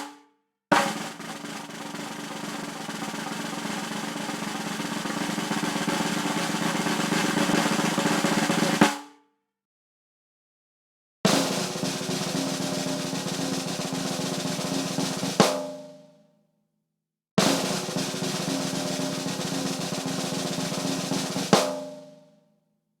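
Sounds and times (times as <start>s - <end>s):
drum roll: 0.7s - 9.0s, 11.3s - 15.7s, 17.4s - 22.0s.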